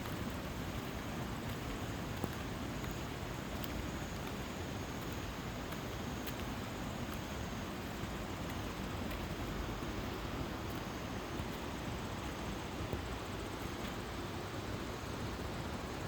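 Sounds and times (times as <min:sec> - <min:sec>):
faint ticks: 0:00.0 - 0:14.0
stream rushing: 0:00.0 - 0:16.0.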